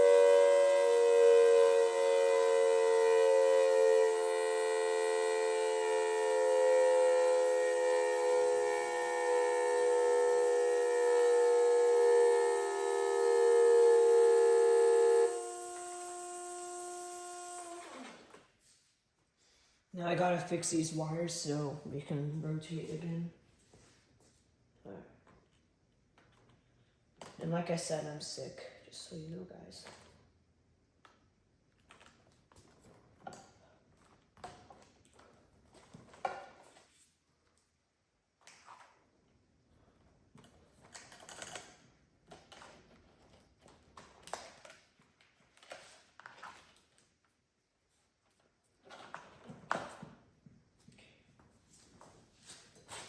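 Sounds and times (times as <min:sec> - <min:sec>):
siren holding a steady chord: 0:00.0 - 0:18.0.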